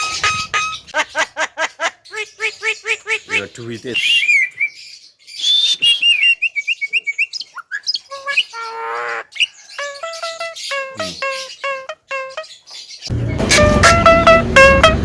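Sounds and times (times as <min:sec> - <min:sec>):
harsh rasping bird call: 0:00.0 - 0:01.0, 0:02.1 - 0:04.6, 0:07.6 - 0:15.0
bird singing whistled notes: 0:03.9 - 0:13.5.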